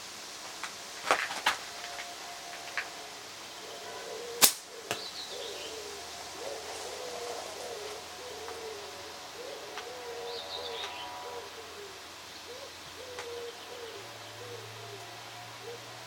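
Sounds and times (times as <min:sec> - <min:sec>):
dove cooing: 0:01.1 - 0:16.0
slingshot snaps and clicks: 0:04.4 - 0:05.0.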